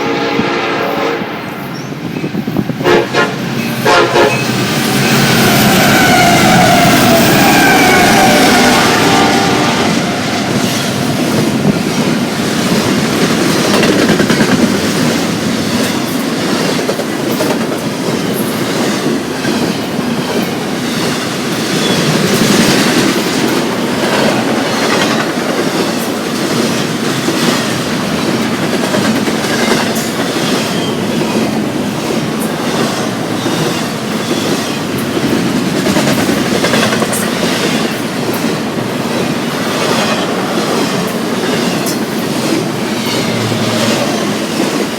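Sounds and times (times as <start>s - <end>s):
freight train rumble: 0.0s - 44.9s
wheels clacking on rail joints: 10.0s - 44.9s.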